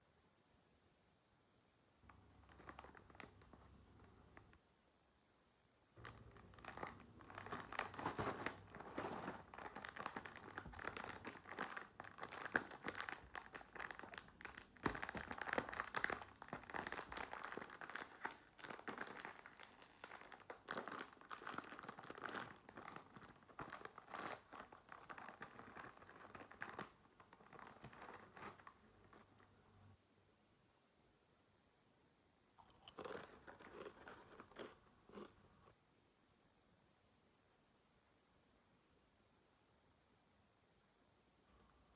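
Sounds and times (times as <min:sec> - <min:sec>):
plastic wrapper crinkling: 0:02.1 - 0:04.5, 0:06.0 - 0:29.3.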